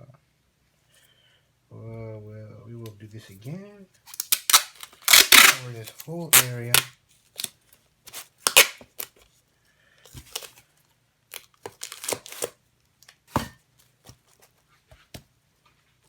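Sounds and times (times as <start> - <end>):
tape ripping and tearing: 4.1 - 7.5, 8.1 - 9.2, 11.4 - 12.6.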